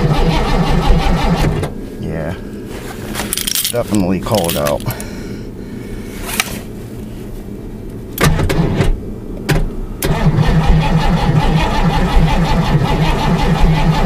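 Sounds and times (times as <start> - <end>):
engine cranking on starter: 0.0 - 1.7, 8.2 - 14.0.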